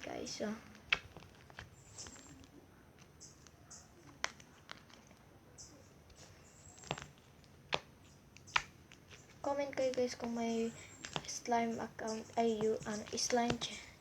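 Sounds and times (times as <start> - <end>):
slime squished by hand: 0.7 - 5.2, 6.1 - 11.4.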